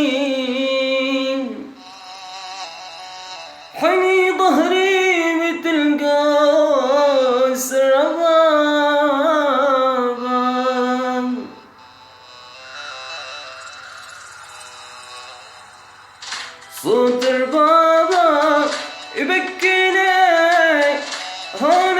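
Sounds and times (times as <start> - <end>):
man singing ornamented phrase: 16.7 - 21.9.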